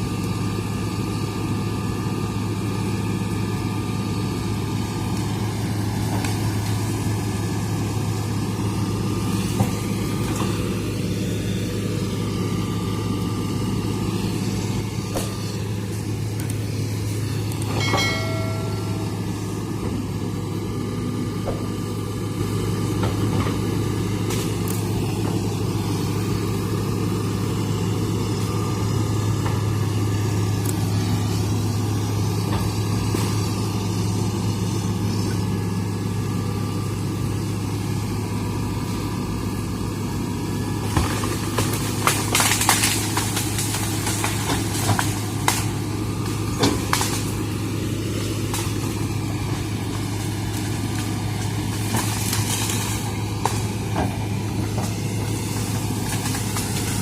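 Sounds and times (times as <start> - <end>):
excavator diesel engine humming: 0.0 - 57.0
sharp cracks: 41.2 - 47.4.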